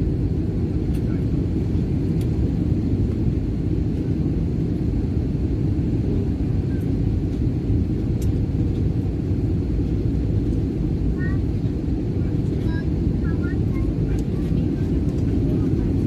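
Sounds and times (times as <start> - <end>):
airliner cabin rumble: 0.0 - 16.0.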